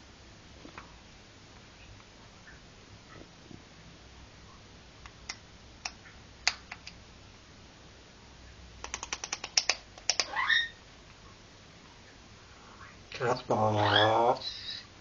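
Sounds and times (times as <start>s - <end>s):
sharp clicks: 5.0s - 7.0s, 8.8s - 10.3s
rising parrot call: 10.2s - 10.8s, 13.8s - 14.8s.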